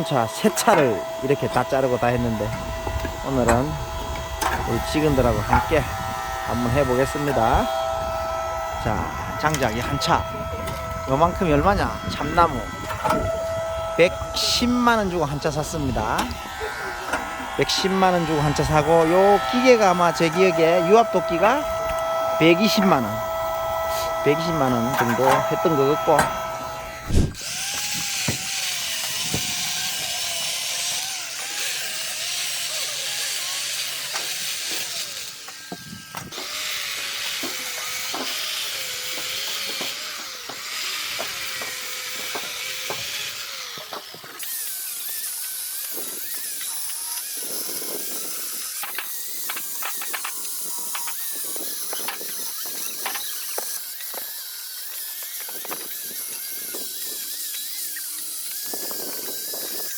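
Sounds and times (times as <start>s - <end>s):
log splitter hissing and humming: 0.0s - 59.9s
knocks and clicks: 2.5s - 5.9s.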